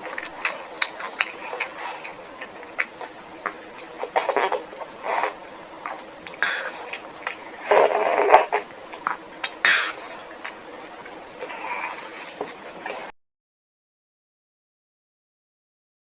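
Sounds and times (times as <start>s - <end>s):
chewing and mouth sounds: 0.0s - 13.1s.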